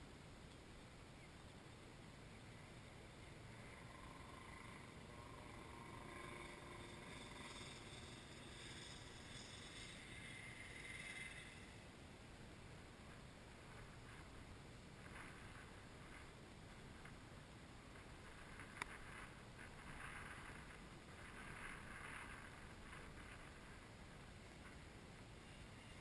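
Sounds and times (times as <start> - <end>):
low background hiss: 0.0 - 26.0
distant kart engine whine: 2.9 - 11.9.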